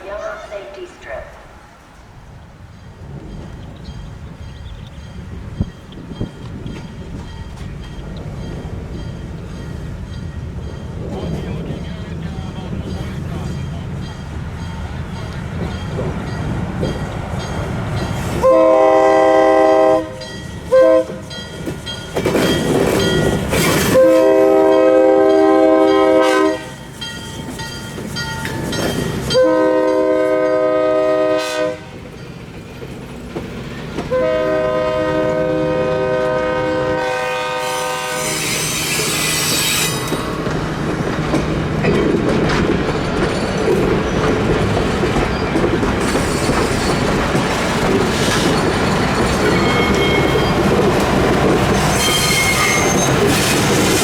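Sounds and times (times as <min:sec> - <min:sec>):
train rumbling by: 0:00.0 - 0:54.0
locomotive horn blasts: 0:18.4 - 0:21.2, 0:23.9 - 0:26.8, 0:29.3 - 0:32.0, 0:34.1 - 0:39.6
wheels clicking over rail joints: 0:21.3 - 0:24.1, 0:27.0 - 0:29.4, 0:39.4 - 0:54.0.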